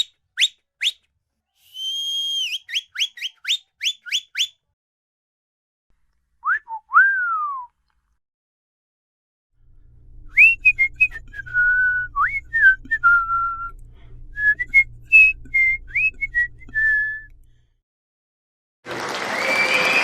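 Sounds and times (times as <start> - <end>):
person whistling a tune: 1.6 - 4.6, 6.4 - 7.7, 10.3 - 13.8, 14.4 - 17.3
faint low hum: 9.6 - 17.7.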